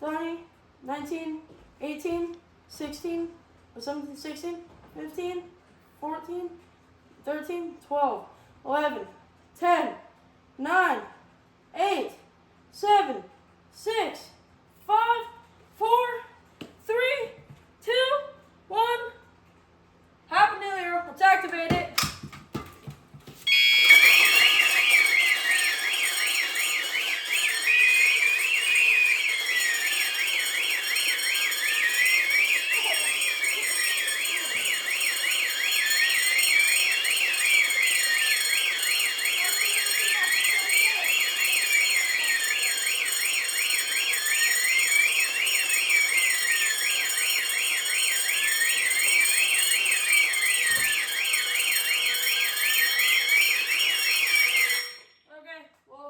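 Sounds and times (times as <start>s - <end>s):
fire alarm siren sweeping: 23.4s - 55.1s
fast warbling alarm tone: 23.5s - 55.0s
steady high-pitched alarm tones: 23.5s - 55.1s.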